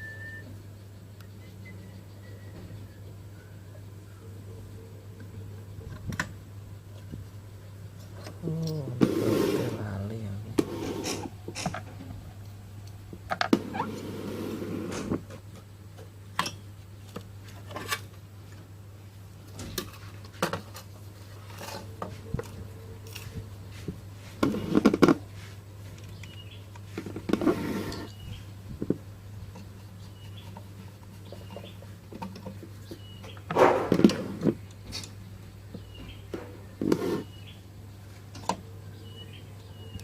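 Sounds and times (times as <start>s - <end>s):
tools and parts clicking and tapping: 15.5s - 18.1s, 31.3s - 33.5s.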